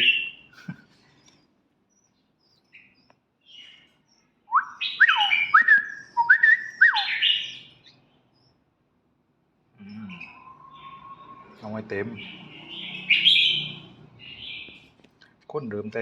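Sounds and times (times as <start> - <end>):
bird whistled song: 0.0 - 0.5, 2.0 - 8.6, 9.8 - 14.8
bird chirps: 0.0 - 8.7, 9.8 - 15.0.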